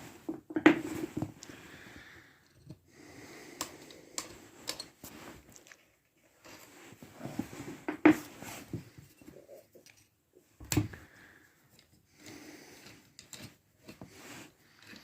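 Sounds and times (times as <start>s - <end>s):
metal tools clicking and knocking: 3.8s - 5.0s.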